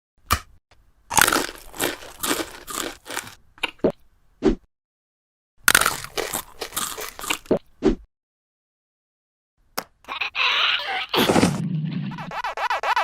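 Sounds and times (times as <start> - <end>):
crunchy biting and chewing: 1.1 - 3.9, 5.6 - 7.7.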